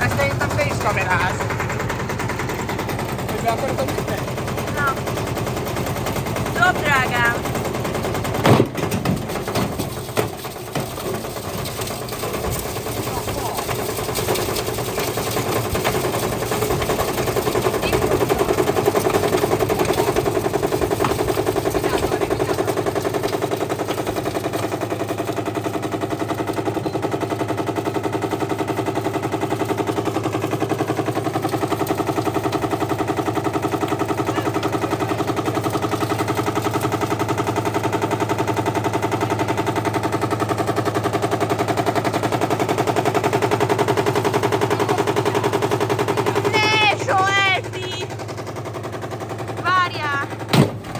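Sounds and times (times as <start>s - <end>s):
bricks rattling in washing machine drum: 0.0s - 27.2s
washing machine motor hum: 0.0s - 50.9s.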